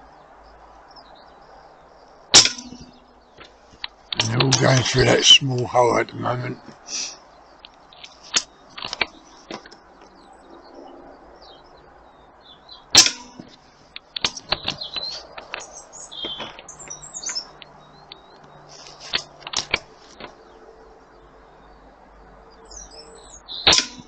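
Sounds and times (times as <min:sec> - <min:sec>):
birds chirping: 0:00.0 - 0:24.0
air rifle shot: 0:23.7 - 0:24.0.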